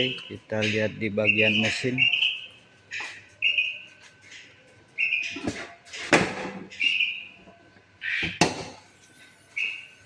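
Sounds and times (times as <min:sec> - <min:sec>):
bird chirping: 0:00.0 - 0:04.0, 0:05.0 - 0:05.5, 0:06.7 - 0:08.4, 0:09.5 - 0:10.0.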